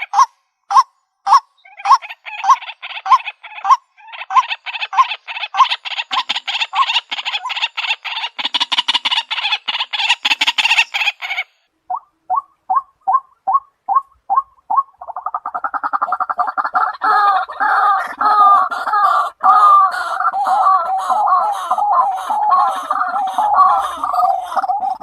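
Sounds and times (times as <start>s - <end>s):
waterhen calling harshly: 0.0s - 11.6s, 12.3s - 25.0s.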